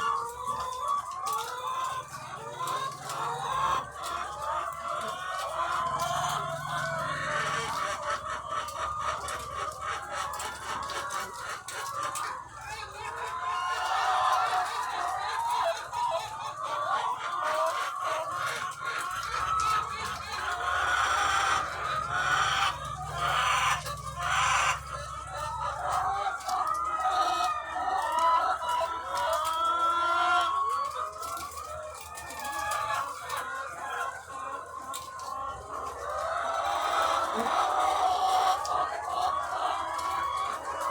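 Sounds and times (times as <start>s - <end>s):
hens clucking: 0.0s - 40.9s.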